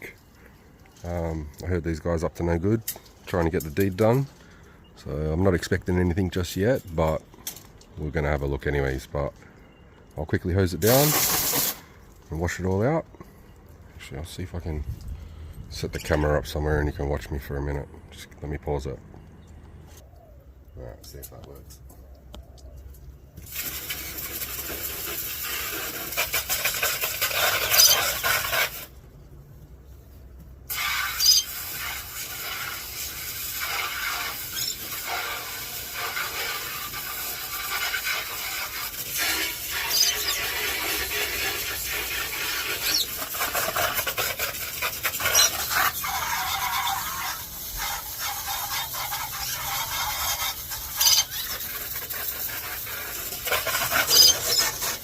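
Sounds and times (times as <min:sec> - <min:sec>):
hose water jet hissing: 0:10.7 - 0:11.9, 0:23.4 - 0:29.0, 0:30.7 - 0:55.0.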